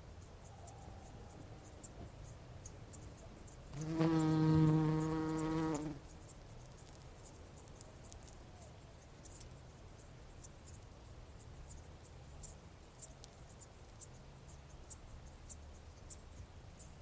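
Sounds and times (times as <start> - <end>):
bumblebee buzzing in flight: 3.8 - 6.0.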